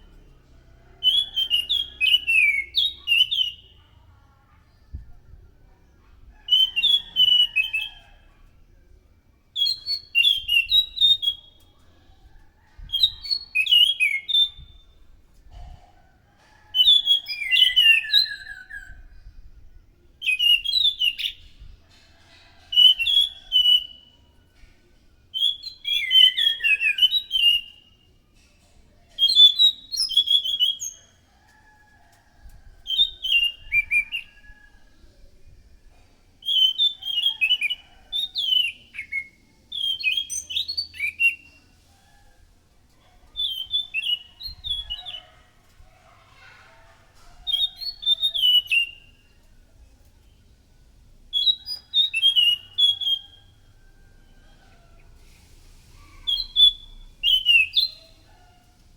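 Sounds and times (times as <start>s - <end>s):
thrush singing whistled phrases: 22.7s - 24.2s, 25.4s - 27.9s, 36.4s - 41.5s, 43.4s - 45.2s, 47.5s - 49.1s, 51.3s - 53.5s, 56.3s - 58.2s.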